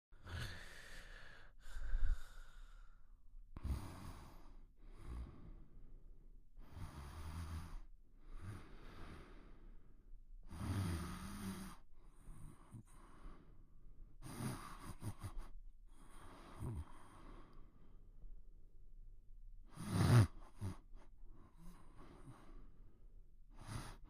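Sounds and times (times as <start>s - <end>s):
cartoon character snoring: 0.2s - 0.7s, 3.6s - 5.0s, 10.5s - 11.8s, 14.2s - 15.5s, 19.7s - 20.9s.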